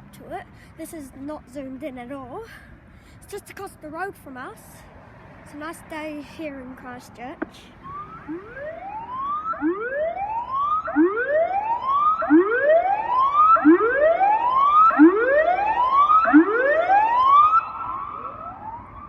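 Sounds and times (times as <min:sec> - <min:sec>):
whooping warning siren: 0:07.8 - 0:19.0.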